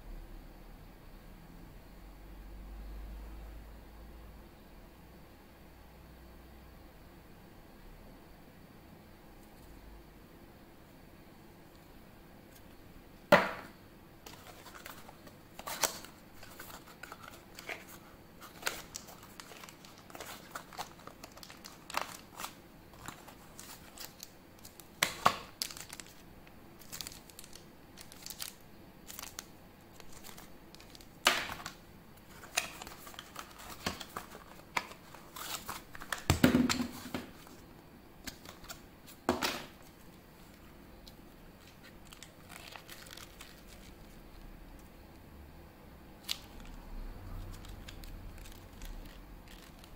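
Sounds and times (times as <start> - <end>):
wrapping crinkling and tearing: 14.2 - 36.3, 38.2 - 44.4, 46.2 - 49.9.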